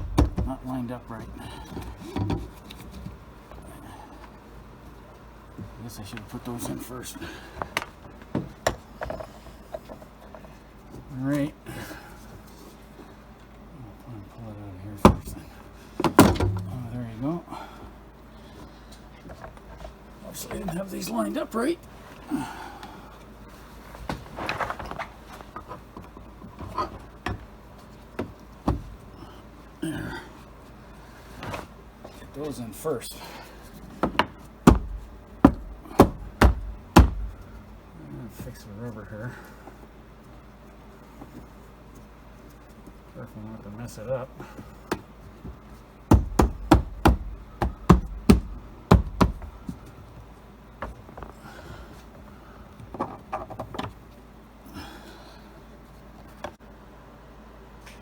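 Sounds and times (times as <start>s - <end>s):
sharp knocks on rubber seal: 0.0s - 0.6s, 15.1s - 15.4s, 34.0s - 37.4s, 46.1s - 49.6s
scraping and rustling: 23.8s - 26.0s.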